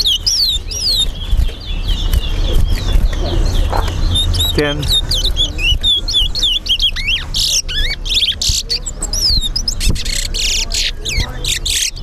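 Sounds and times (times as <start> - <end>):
finches whistling song: 0.0 - 12.0.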